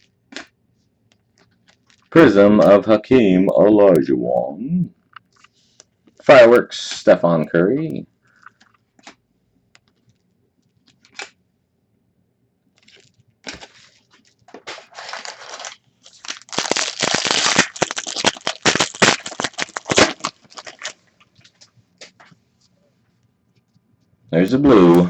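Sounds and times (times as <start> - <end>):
plastic wrapper tearing and crinkling: 1.4 - 2.8, 12.8 - 22.2.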